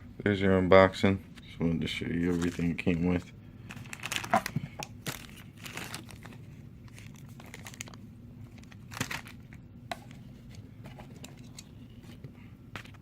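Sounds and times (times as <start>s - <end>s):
packaging crinkling and rustling: 2.2s - 2.9s, 3.6s - 13.0s.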